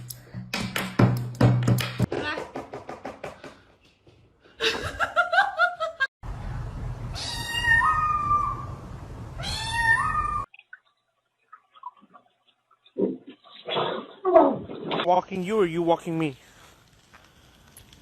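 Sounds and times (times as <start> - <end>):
cat meowing: 7.2 - 8.7, 9.4 - 10.4.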